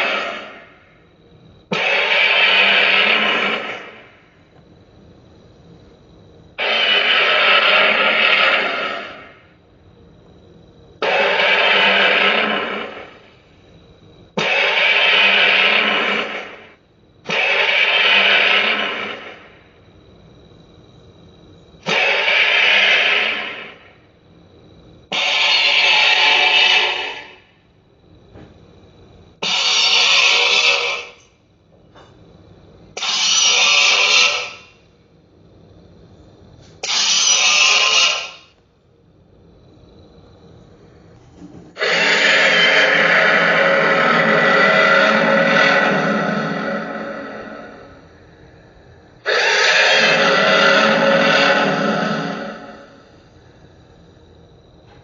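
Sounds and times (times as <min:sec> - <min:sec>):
monster roar: 0:01.8 - 0:04.0, 0:06.6 - 0:09.4, 0:11.0 - 0:13.2, 0:14.4 - 0:16.7, 0:17.3 - 0:19.5, 0:21.9 - 0:23.9, 0:41.8 - 0:48.0, 0:49.2 - 0:53.2.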